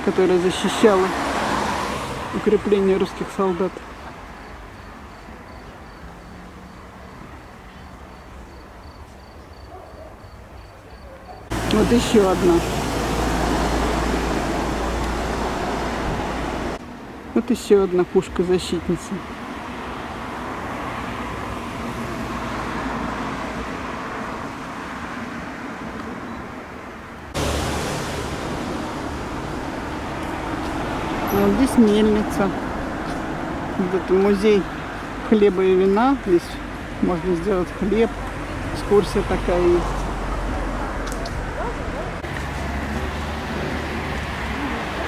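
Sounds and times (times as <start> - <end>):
outdoor background noise: 0.0 - 45.0
cricket chirping: 3.8 - 11.7.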